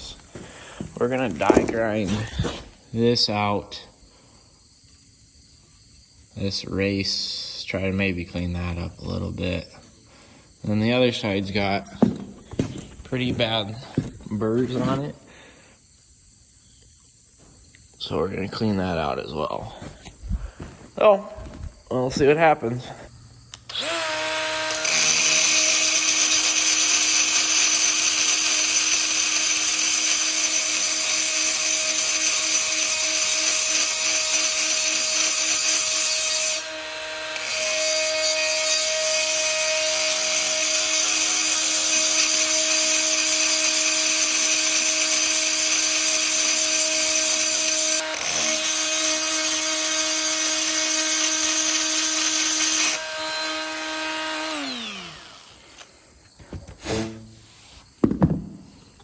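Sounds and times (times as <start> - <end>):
die grinder grinding metal: 4.0 - 15.1, 23.5 - 55.9.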